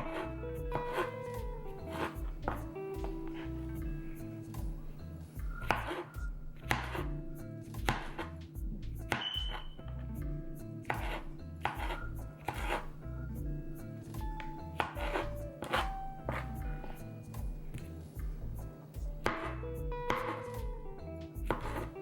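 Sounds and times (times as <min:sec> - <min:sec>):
knife slicing vegetables on board: 0:00.0 - 0:02.7, 0:05.6 - 0:07.1, 0:07.8 - 0:08.4, 0:09.1 - 0:09.7, 0:10.9 - 0:13.0, 0:14.7 - 0:16.7, 0:19.2 - 0:20.8, 0:21.4 - 0:22.0.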